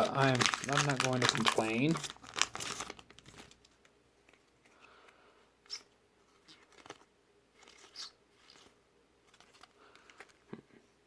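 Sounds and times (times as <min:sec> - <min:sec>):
cards and foil wrappers rustling: 0:00.0 - 0:03.9, 0:06.5 - 0:08.0, 0:09.3 - 0:10.4.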